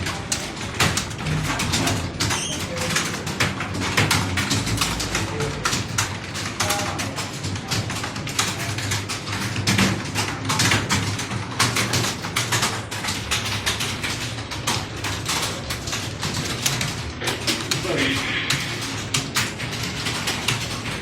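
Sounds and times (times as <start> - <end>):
keyboards typing clatter: 0.0 - 21.0.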